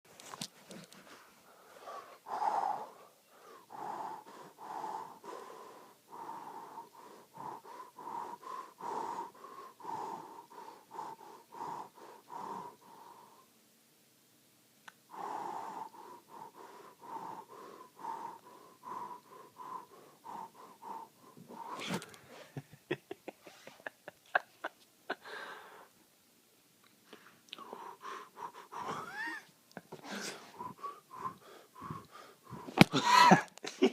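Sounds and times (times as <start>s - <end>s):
person panting wheezily: 1.4s - 13.4s, 15.1s - 22.6s, 23.4s - 25.9s, 27.6s - 33.9s.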